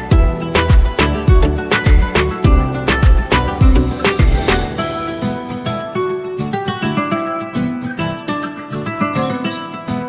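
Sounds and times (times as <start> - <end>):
deep falling-pitch kick drums: 0.1 - 5.0.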